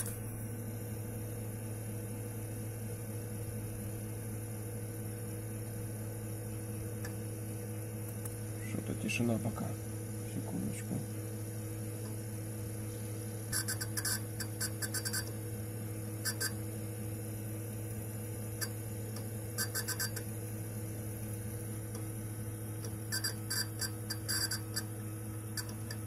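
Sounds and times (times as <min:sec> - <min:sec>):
computer hum: 0:00.0 - 0:26.0
hard drive scratchy ticking: 0:13.4 - 0:15.5, 0:16.2 - 0:16.7, 0:17.9 - 0:20.6, 0:21.2 - 0:26.0.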